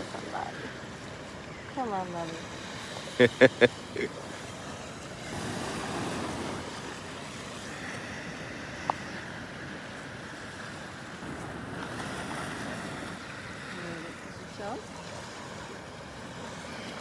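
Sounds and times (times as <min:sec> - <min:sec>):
ocean surf breaking: 0:00.0 - 0:17.0.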